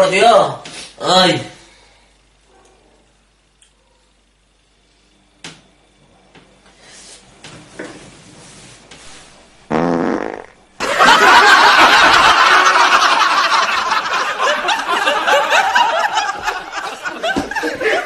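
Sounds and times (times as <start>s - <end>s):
fart: 9.7s - 10.6s
audience laughter: 10.8s - 18.0s.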